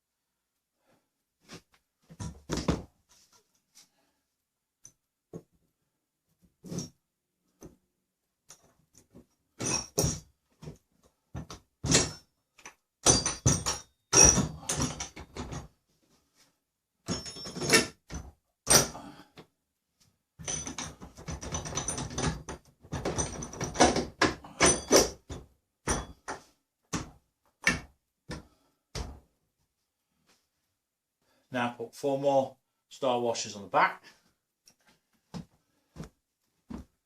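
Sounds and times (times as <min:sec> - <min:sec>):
bolts and nuts clinking: 0:08.5 - 0:10.3, 0:11.4 - 0:15.8, 0:17.0 - 0:19.0, 0:20.4 - 0:26.4.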